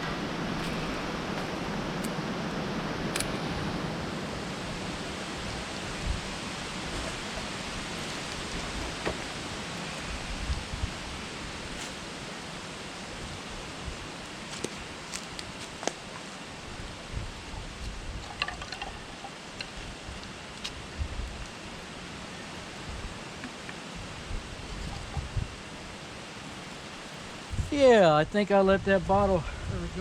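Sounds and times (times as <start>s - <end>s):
strong wind rushing: 0.0s - 11.7s, 24.0s - 25.7s, 27.4s - 30.0s
wind buffeting microphone: 0.0s - 11.8s, 16.6s - 21.8s, 23.9s - 25.9s, 27.2s - 30.0s.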